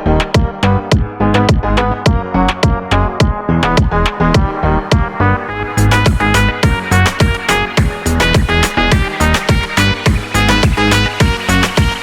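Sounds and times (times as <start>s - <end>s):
electronic music with fast drum beat: 0.0s - 12.0s.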